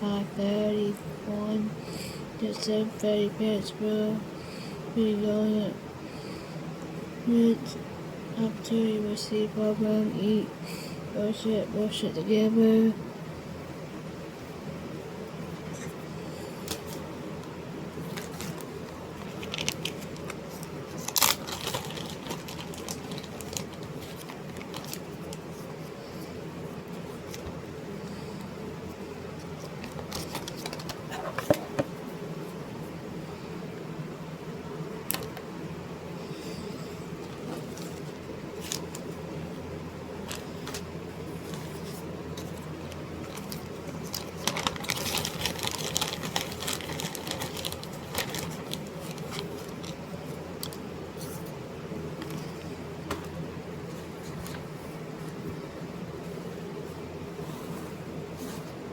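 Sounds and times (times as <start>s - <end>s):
room hum: 0.0s - 58.9s
crinkling rustles: 15.6s - 27.6s, 29.4s - 32.6s, 37.2s - 39.2s, 40.2s - 55.6s.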